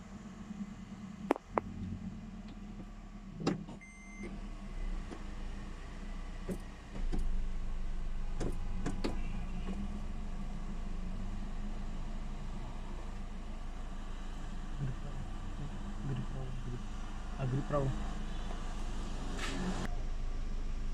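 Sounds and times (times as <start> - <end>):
car engine humming: 0.0 - 20.9
short electronic beep: 3.8 - 4.3.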